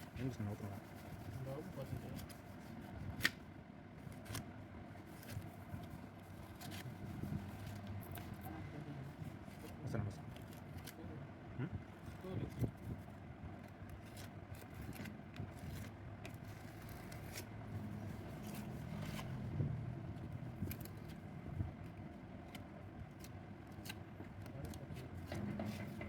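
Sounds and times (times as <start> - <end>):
steady low rumble: 10.2 - 23.6.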